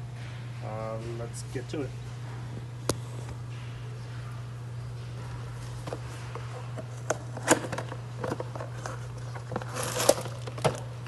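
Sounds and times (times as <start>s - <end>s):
steady low hum: 0.0s - 11.0s
plastic packaging crinkling: 7.5s - 10.8s.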